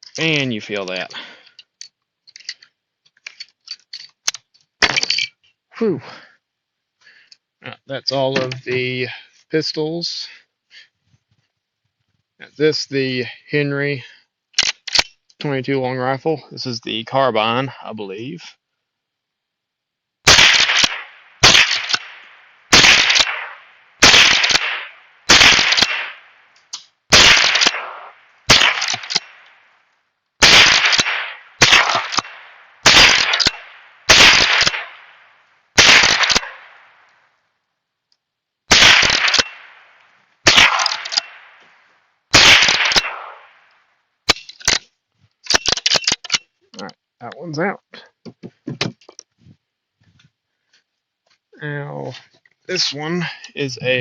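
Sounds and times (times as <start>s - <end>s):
rifle shots with echo: 20.3s - 26.4s, 27.1s - 29.6s, 30.4s - 35.2s, 35.8s - 37.0s, 38.7s - 41.6s, 42.3s - 43.6s.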